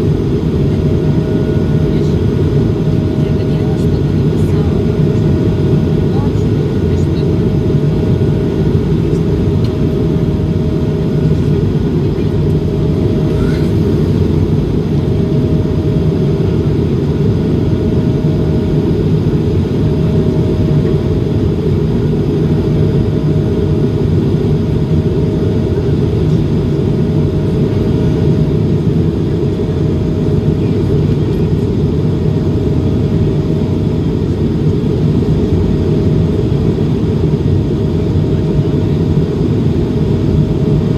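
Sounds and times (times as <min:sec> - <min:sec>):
faint pulsing hum: 0:00.0 - 0:40.9
jet engine roar in flight: 0:00.0 - 0:40.9.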